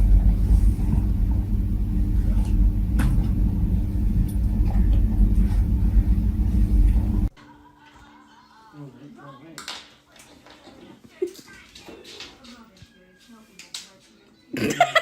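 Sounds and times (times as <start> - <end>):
low mechanical rumble: 0.0 - 7.3.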